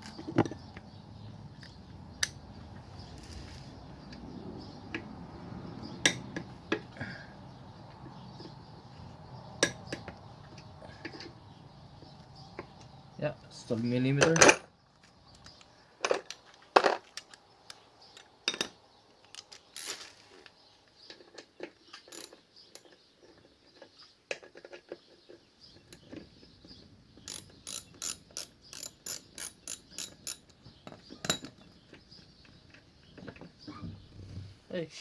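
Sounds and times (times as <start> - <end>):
ratchet wrench clicking: 27.3 - 30.4.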